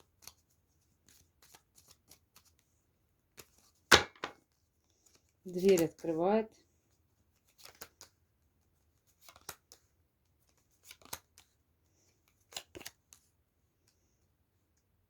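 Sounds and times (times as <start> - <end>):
cards being shuffled: 0.0 - 4.3, 4.9 - 6.2, 7.3 - 8.2, 9.0 - 9.8, 10.4 - 13.3.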